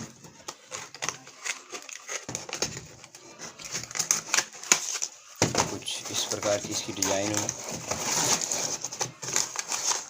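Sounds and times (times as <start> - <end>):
packaging clicks and crinkling: 0.0 - 10.0.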